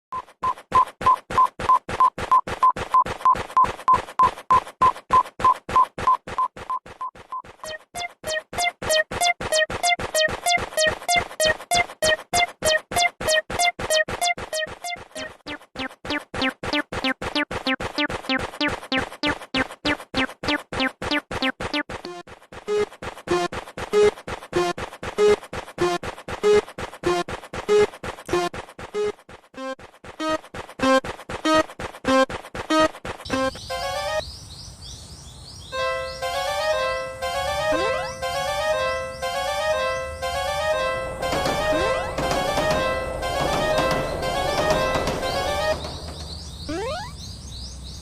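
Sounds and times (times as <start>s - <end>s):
level crossing bells ringing: 35.8s - 47.1s.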